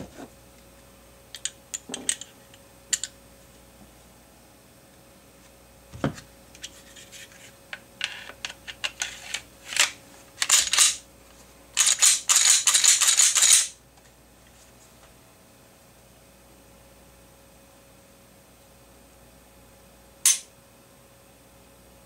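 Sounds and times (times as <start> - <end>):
metal parts clicking and rattling: 8.4 - 11.0, 11.8 - 13.7.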